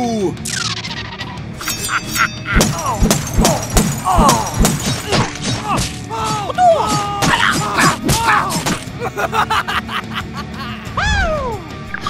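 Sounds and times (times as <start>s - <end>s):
background music: 0.0s - 12.0s
wordless vocal cries and groans: 2.4s - 11.8s
knocks and clicks: 2.6s - 6.0s.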